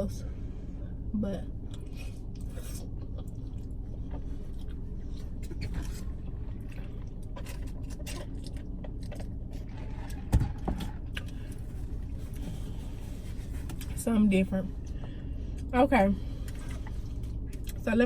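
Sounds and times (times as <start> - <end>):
low rumble inside a car: 0.0 - 18.0
person chewing: 1.7 - 10.2.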